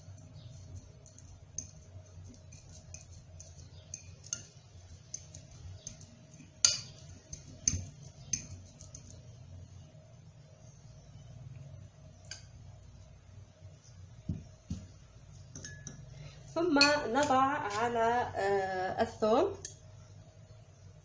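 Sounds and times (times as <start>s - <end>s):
utensil clinking against bowl: 0.8s - 9.2s, 15.5s - 16.0s.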